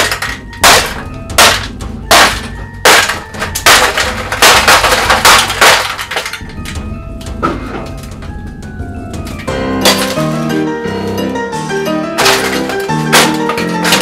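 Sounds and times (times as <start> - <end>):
hard blows smashing copper scrap: 0.0 - 6.8, 9.4 - 10.6, 12.2 - 14.0.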